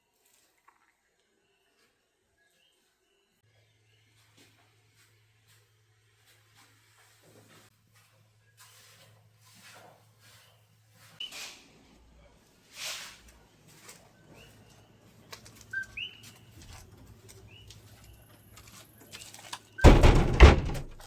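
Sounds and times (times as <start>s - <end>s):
birds chirping: 15.7s - 18.3s.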